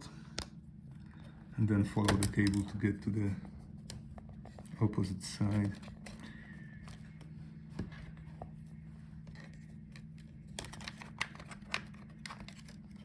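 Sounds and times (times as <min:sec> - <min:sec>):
steady low hum: 0:00.0 - 0:13.0
plastic parts clicking: 0:09.3 - 0:13.0.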